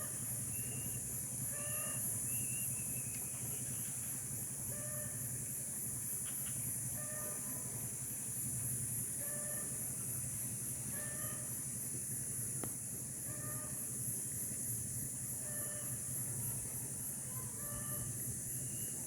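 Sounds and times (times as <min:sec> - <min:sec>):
faint animal calls: 0:00.0 - 0:02.6, 0:04.6 - 0:05.4, 0:06.8 - 0:07.9, 0:09.1 - 0:09.9, 0:10.8 - 0:11.7, 0:13.2 - 0:14.0, 0:15.2 - 0:19.0.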